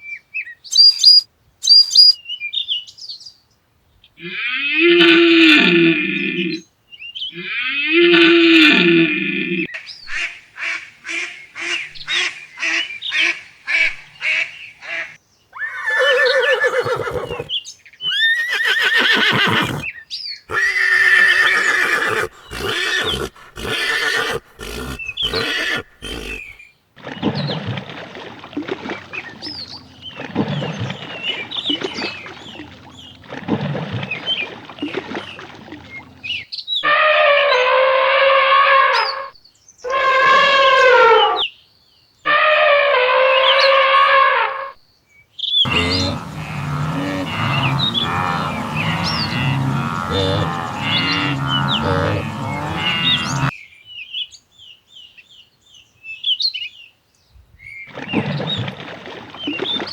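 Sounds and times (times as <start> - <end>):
animal calls: 15.6 - 19.9, 20.5 - 26.6, 45.7 - 53.5
short repeated calls: 20.5 - 26.6.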